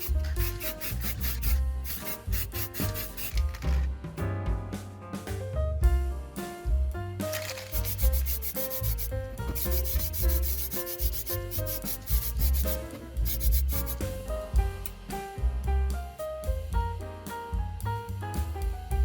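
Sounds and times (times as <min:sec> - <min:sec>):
sandpaper rubbing: 0:00.0 - 0:03.8, 0:07.3 - 0:14.1
background music with beat: 0:00.0 - 0:19.0.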